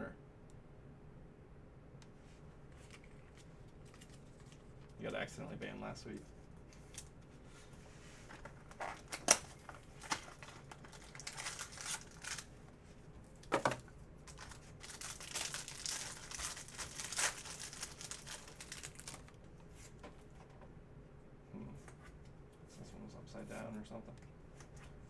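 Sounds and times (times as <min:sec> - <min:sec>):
plastic wrapper crinkling: 0:02.8 - 0:04.7, 0:08.6 - 0:12.6, 0:13.3 - 0:19.4
packaging being torn open: 0:08.7 - 0:12.5, 0:13.5 - 0:19.4.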